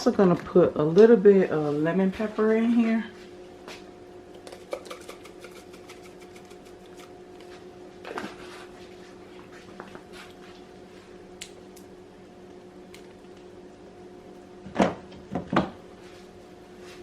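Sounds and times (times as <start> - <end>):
low electrical hum: 0.0 - 17.0
seasoning shaker rattling: 4.5 - 7.1.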